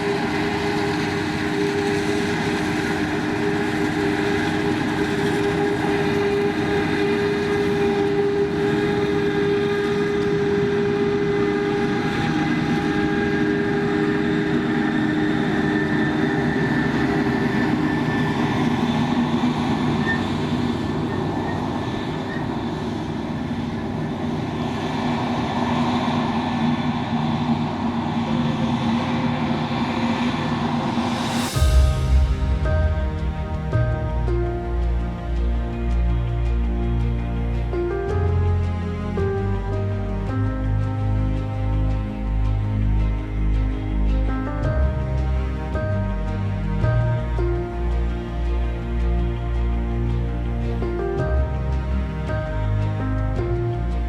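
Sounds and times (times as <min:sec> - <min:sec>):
whining machine tones: 0:00.0 - 0:24.8
harvester engine drone: 0:00.0 - 0:54.0.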